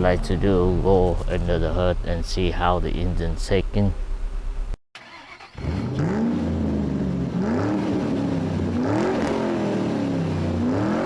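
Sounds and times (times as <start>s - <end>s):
car engine misfiring: 0.0s - 6.6s.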